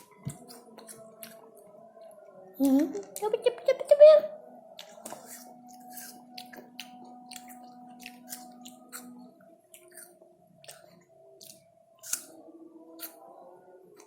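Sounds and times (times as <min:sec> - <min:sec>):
crunchy chewing of pear: 0:04.8 - 0:12.4.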